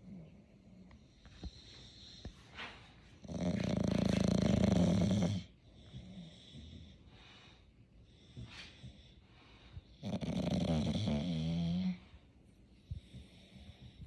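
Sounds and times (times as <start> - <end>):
dog breathing: 1.0 - 14.0
dog snoring: 3.2 - 7.2, 9.9 - 12.1, 12.9 - 14.0.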